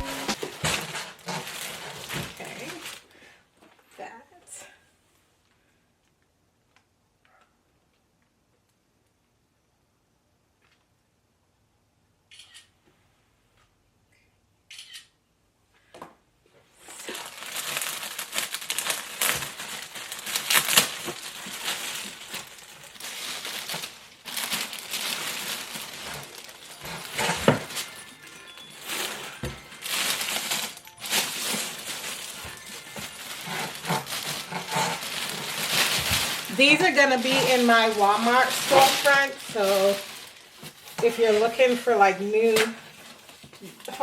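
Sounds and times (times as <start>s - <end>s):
packaging crinkling and rustling: 0.0s - 3.2s, 16.8s - 44.0s.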